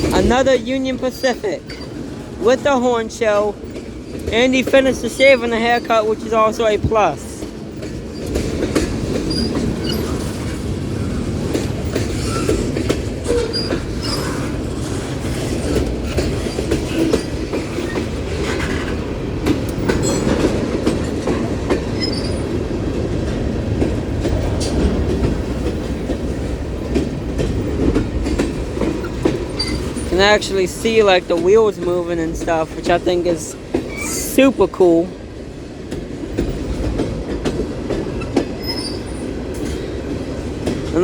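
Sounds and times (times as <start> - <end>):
steel wheels rumbling on rail: 0.0 - 41.0
high wheel squeal: 1.1 - 2.0, 9.3 - 10.3, 12.1 - 14.6, 22.0 - 22.5, 29.5 - 30.1, 38.2 - 39.2.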